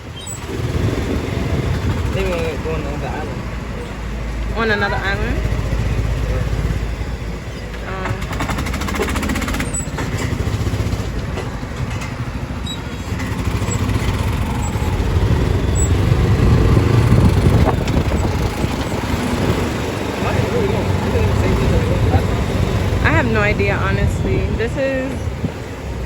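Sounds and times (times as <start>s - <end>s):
golf cart rumbling: 0.0s - 26.0s
wind on microphone: 0.4s - 3.5s, 13.7s - 26.0s.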